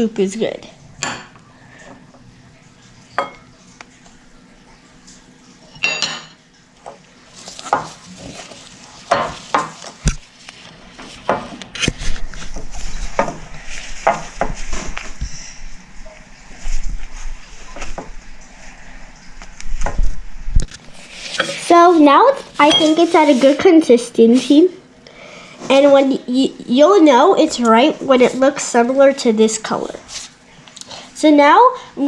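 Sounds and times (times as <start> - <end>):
spoon stirring in a bowl: 7.4 - 10.4, 20.9 - 21.8, 22.6 - 23.8.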